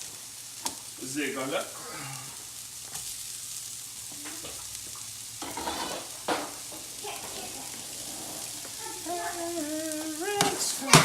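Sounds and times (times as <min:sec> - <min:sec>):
food sizzling in a frying pan: 0:00.0 - 0:11.0
utensil scraping stirs: 0:05.4 - 0:11.0.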